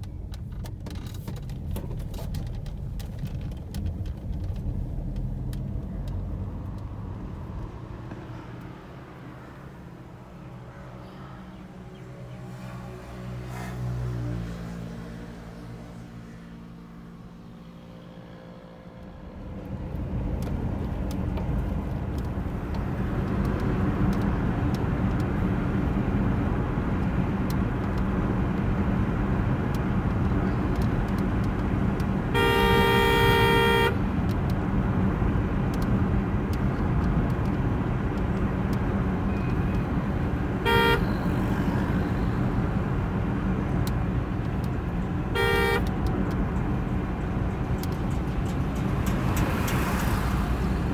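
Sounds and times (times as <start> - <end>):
road traffic engine noise: 0.0 - 50.9
vehicle horn honking: 32.3 - 34.1, 40.6 - 41.8, 45.3 - 46.0.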